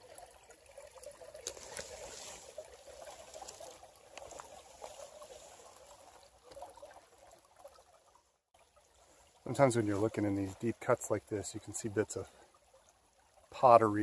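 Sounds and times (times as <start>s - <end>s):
water trickling over rocks: 0.0s - 14.0s
small ticks: 3.3s - 4.5s.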